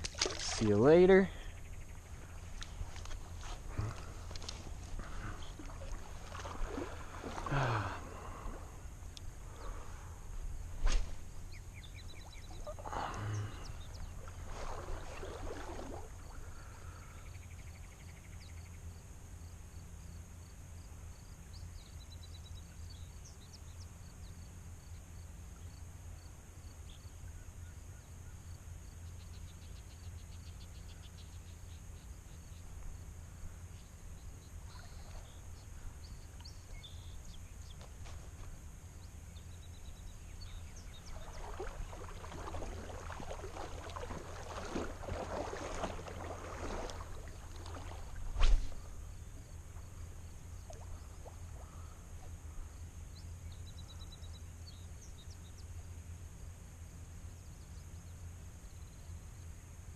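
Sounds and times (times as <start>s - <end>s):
river rumble: 0.0s - 17.3s, 32.8s - 52.9s
small birds chirping: 0.3s - 8.1s, 11.4s - 18.8s, 33.7s - 48.1s
rustling swishes: 10.7s - 11.4s, 47.6s - 49.0s.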